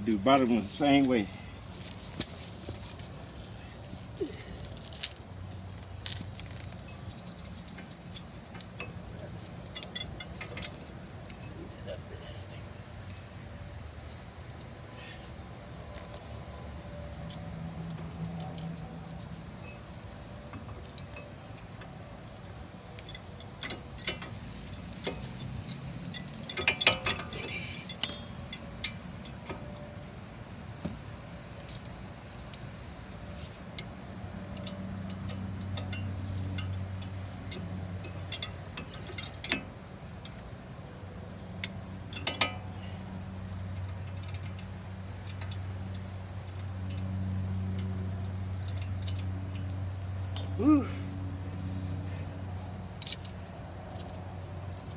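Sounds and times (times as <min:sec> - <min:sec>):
low background hum: 0:00.0 - 0:54.9
metal hardware clattering: 0:06.0 - 0:13.3, 0:22.9 - 0:29.9, 0:33.3 - 0:40.7, 0:41.5 - 0:43.1
metallic clicks of tools: 0:22.9 - 0:29.8, 0:33.3 - 0:40.9, 0:41.5 - 0:54.2.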